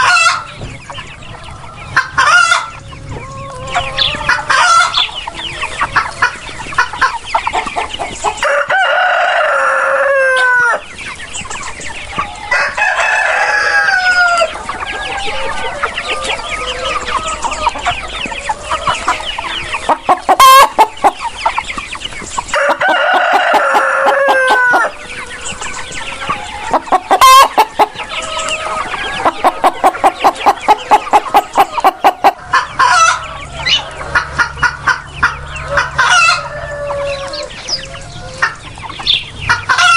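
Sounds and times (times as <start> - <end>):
hens clucking: 0.0 - 39.9
rooster crowing: 8.4 - 10.9, 12.4 - 20.8, 22.5 - 34.4, 35.4 - 38.5
chicken squawks: 12.1 - 39.9.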